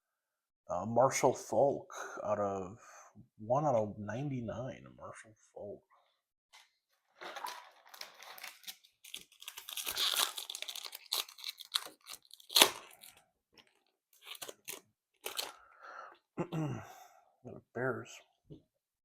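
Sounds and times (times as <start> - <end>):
plastic wrapper tearing and crinkling: 7.1 - 15.6.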